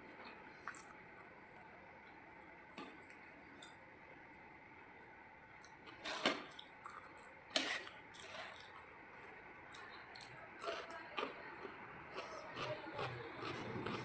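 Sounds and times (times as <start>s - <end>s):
wet eating squishes: 0.2s - 1.0s.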